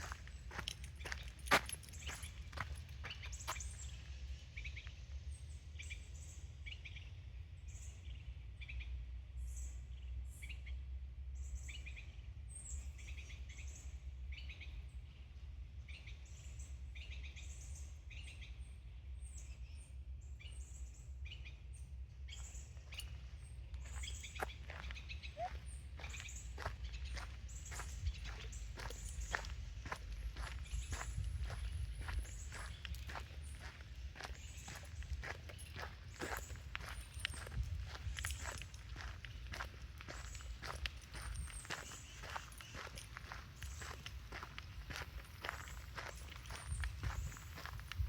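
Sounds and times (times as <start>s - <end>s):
birds chirping: 0.0s - 4.4s, 22.3s - 48.0s
low background rumble: 18.9s - 48.0s.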